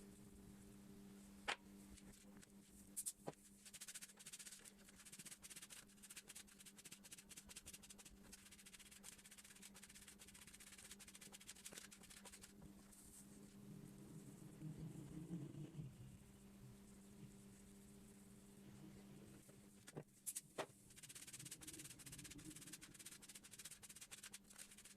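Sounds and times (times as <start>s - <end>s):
steady low hum: 0.0s - 24.9s
rapid scraping strokes: 3.0s - 13.2s, 19.9s - 24.9s.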